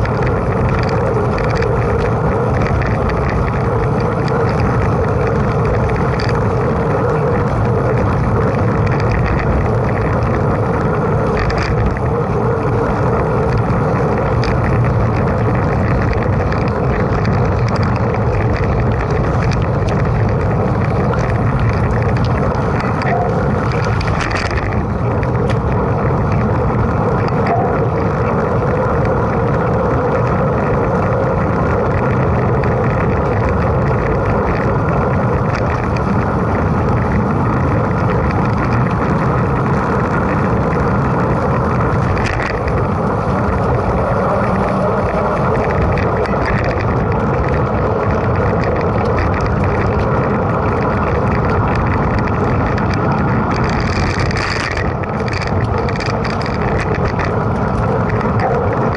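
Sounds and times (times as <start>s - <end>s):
bike tyre noise: 0.0s - 58.9s
faint clicks and rattles: 0.0s - 58.9s.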